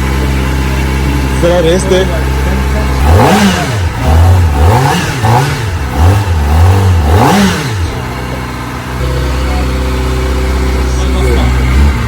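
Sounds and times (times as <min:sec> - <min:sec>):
motorcycle engine revving: 0:00.0 - 0:12.0.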